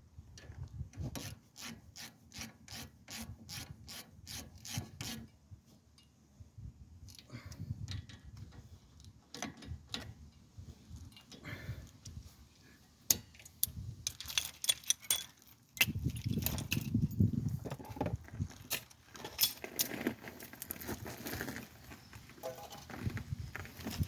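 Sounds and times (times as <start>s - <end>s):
metal parts clinking and rattling: 13.1s - 21.6s.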